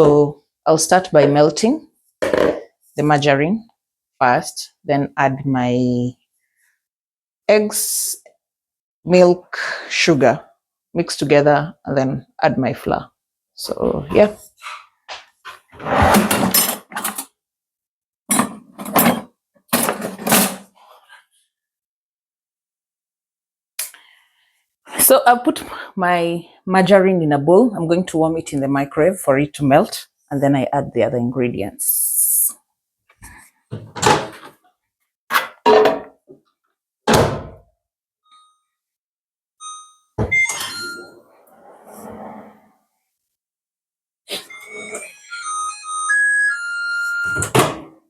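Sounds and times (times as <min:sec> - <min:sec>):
faint electronic beep: 0:39.6 - 0:41.3, 0:44.4 - 0:47.5.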